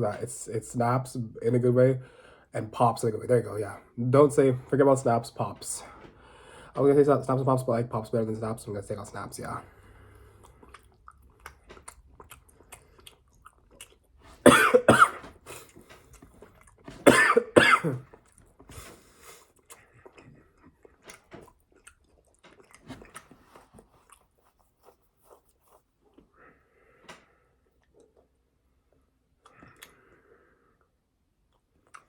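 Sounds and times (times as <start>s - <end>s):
person chewing food: 9.7s - 14.4s, 15.1s - 17.0s, 18.0s - 32.0s
person coughing: 14.4s - 15.7s, 17.0s - 18.0s.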